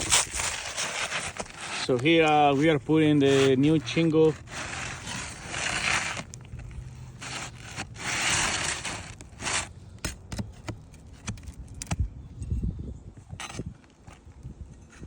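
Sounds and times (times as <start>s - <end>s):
roof shingle scraping: 0.0s - 11.9s.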